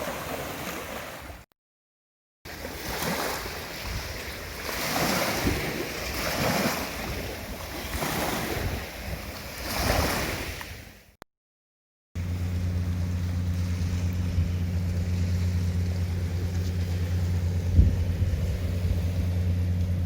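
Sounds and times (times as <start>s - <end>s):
sea waves washing ashore: 0.0s - 1.5s, 2.5s - 11.2s, 12.2s - 20.0s
wind on microphone: 3.4s - 11.0s, 13.5s - 20.0s.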